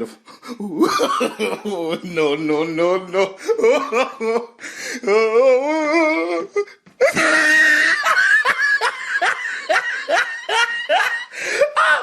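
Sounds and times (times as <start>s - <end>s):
high-pitched laughing: 5.7s - 12.0s.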